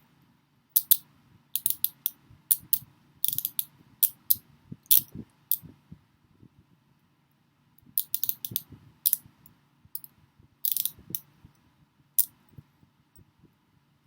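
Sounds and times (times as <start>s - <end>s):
handcuffs ratcheting clicks: 0.8s - 1.0s, 1.6s - 4.2s, 8.0s - 9.2s, 10.0s - 11.2s.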